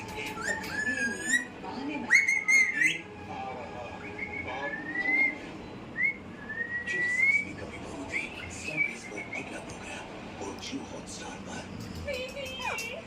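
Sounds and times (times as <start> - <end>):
parrot whistling: 0.0 - 3.3, 3.9 - 9.6.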